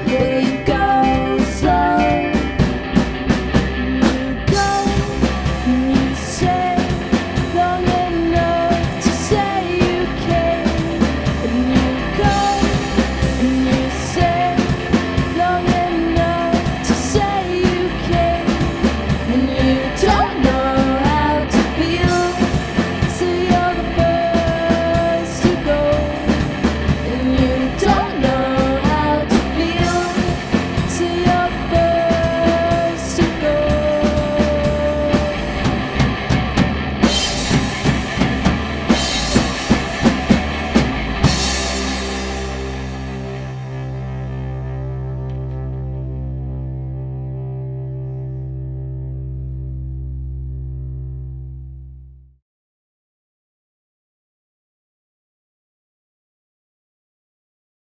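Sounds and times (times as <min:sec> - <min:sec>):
person singing: 0:00.0 - 0:02.9, 0:03.8 - 0:35.8
steady drum beat: 0:00.0 - 0:43.5
live band playing a song: 0:00.0 - 0:43.9.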